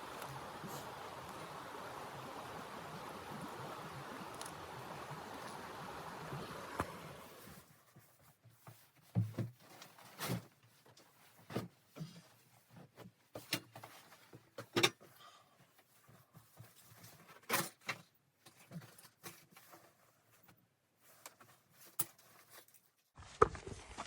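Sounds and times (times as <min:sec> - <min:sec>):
knocks and clunks of handled objects: 0:08.4 - 0:15.2.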